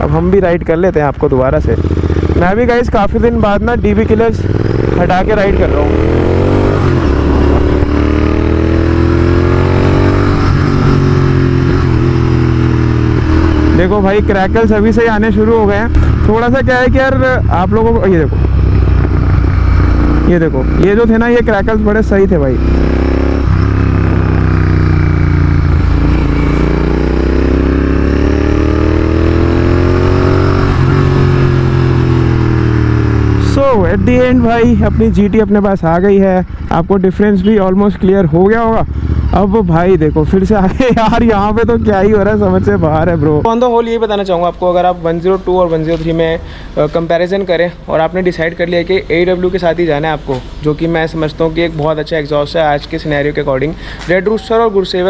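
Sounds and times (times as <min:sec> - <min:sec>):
motorcycle engine exhaust note: 0:01.7 - 0:35.4.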